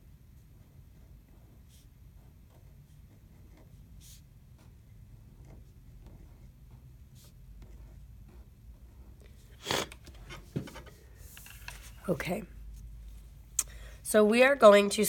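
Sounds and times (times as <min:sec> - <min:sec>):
pencil writing on paper: 0:00.4 - 0:12.3.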